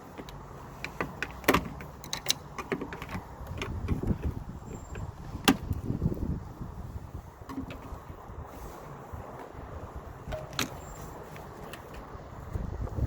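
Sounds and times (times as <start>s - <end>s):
hands working inside car door: 0.1s - 5.8s.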